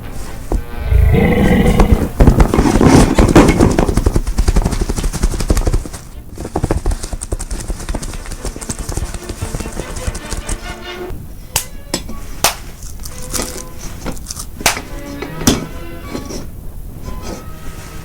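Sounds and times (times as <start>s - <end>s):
horse whinnying: 0.8s - 2.2s
hooves clip-clopping: 1.4s - 11.0s.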